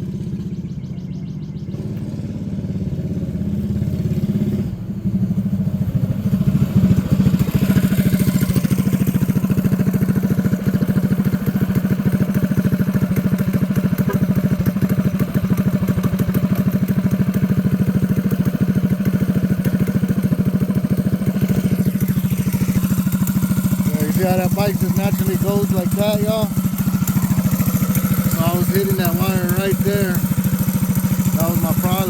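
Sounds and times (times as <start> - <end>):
small engine running: 0.0 - 32.0.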